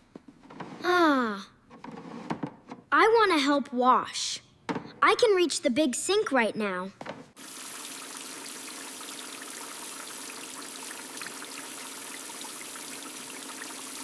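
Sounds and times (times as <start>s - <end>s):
tap water running into sink: 7.4s - 14.0s.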